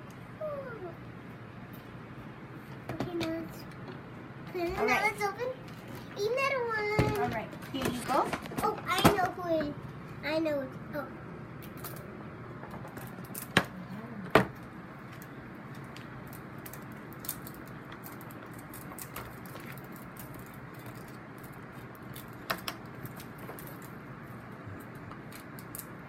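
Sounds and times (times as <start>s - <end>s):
plastic packaging crinkling: 15.1s - 26.0s.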